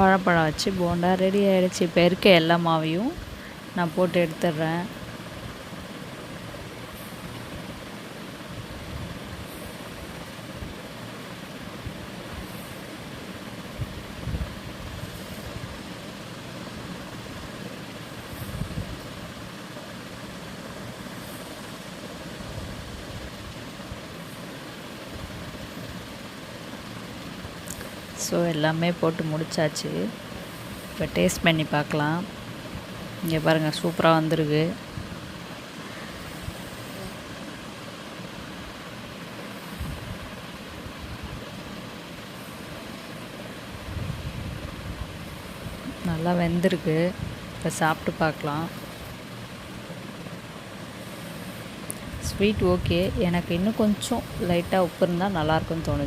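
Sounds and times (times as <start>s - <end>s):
hiss and low rumble: 0.0s - 56.0s.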